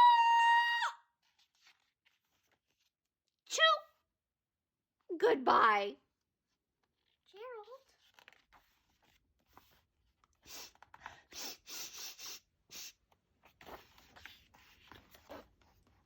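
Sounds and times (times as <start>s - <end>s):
book pages turning: 1.2s - 3.1s, 6.5s - 11.2s, 13.1s - 16.0s
paper rustling: 1.2s - 3.1s, 6.5s - 11.2s, 13.3s - 16.0s.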